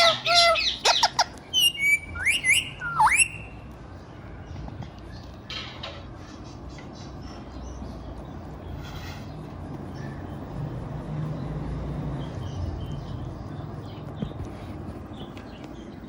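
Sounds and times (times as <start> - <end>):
parrot squawk: 0.0 - 3.5.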